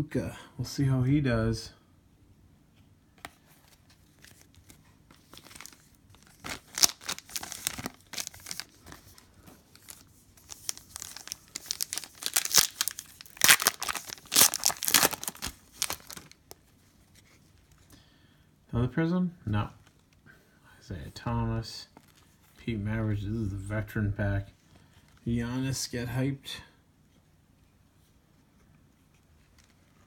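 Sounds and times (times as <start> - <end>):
plastic wrapper tearing and crinkling: 4.2 - 16.6.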